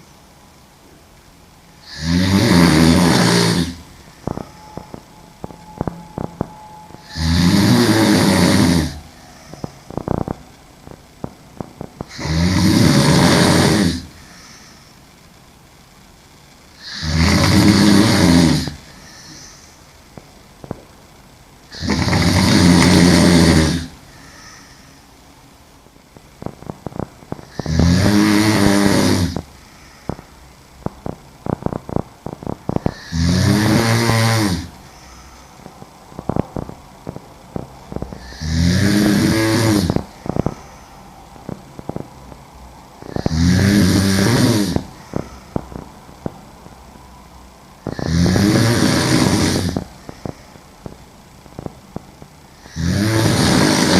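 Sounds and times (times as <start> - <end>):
woman snoring loudly: 1.8 - 10.4, 12.0 - 14.5, 16.8 - 19.6, 21.7 - 24.8, 26.4 - 29.5, 31.0 - 35.3, 37.5 - 42.0, 43.0 - 45.8, 47.8 - 50.0, 52.6 - 53.9.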